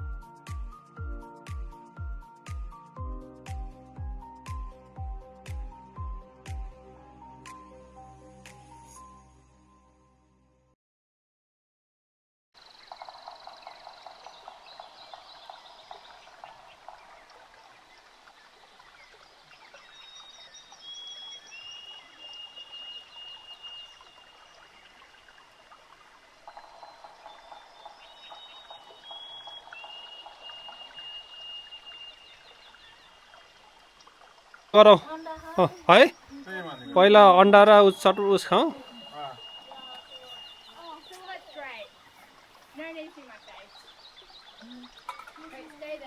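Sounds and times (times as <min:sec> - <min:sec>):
frogs or insects clicking: 0:12.6 - 0:22.4, 0:24.0 - 0:32.0
birds whistling: 0:19.6 - 0:24.4, 0:26.5 - 0:33.0, 0:34.8 - 0:45.2.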